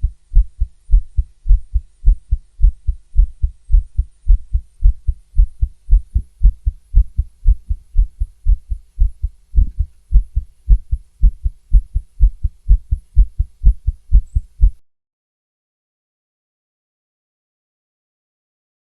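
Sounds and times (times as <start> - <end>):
fast heartbeat through stethoscope: 0.0 - 14.8.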